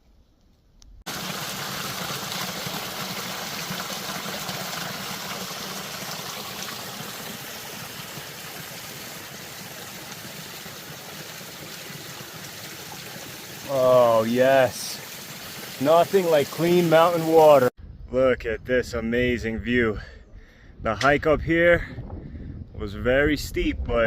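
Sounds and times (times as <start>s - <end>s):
running mountain water: 1.1s - 17.7s.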